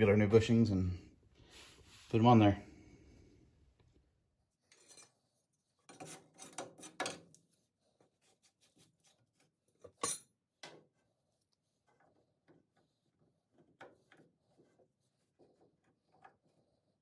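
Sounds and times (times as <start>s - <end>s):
broom sweeping and scraping: 1.4s - 2.5s.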